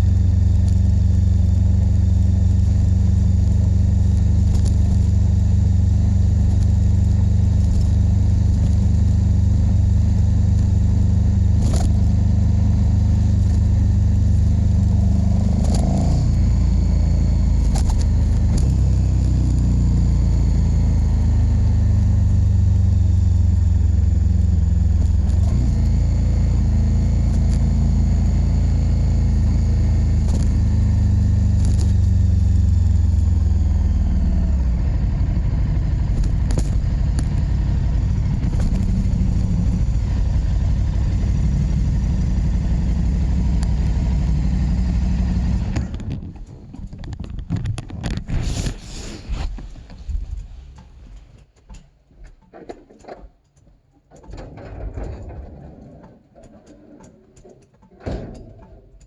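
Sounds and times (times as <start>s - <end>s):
motorcycle engine rumbling: 0.0s - 59.0s
sharp clicks: 17.5s - 19.7s.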